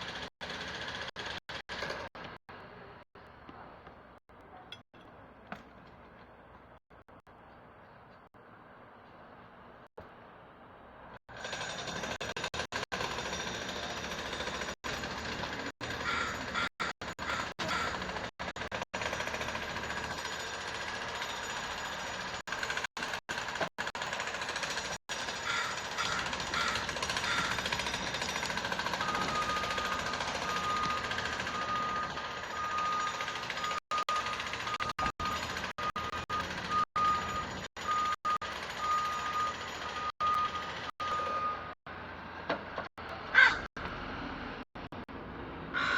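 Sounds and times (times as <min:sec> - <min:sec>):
clattering machinery noise: 0:00.0 - 0:02.4, 0:11.3 - 0:41.8, 0:42.4 - 0:45.2
high steady beeping tone: 0:29.0 - 0:41.8.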